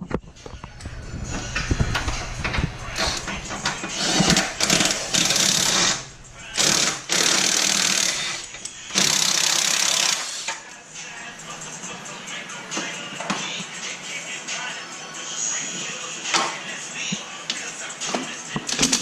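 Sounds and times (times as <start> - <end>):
metal clanks: 0.1 - 9.0
power tool bursts: 3.9 - 10.6.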